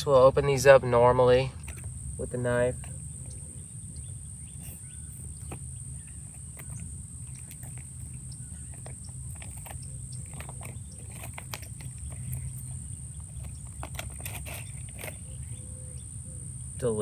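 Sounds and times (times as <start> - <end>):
insects droning: 0.0 - 17.0
plastic packet crinkling: 4.6 - 15.6.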